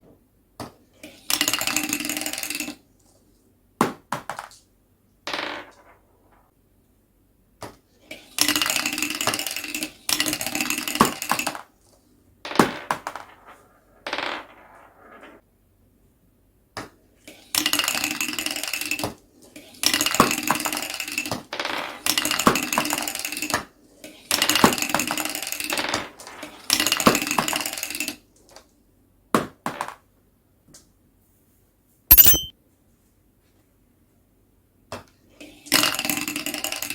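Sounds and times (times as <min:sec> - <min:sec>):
marbles dropping and knocking: 0:32.1 - 0:32.5.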